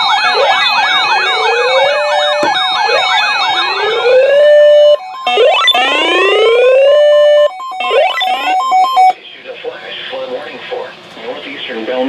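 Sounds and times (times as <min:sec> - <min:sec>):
rising siren wail: 0:00.0 - 0:09.2
siren yelp: 0:00.0 - 0:09.2.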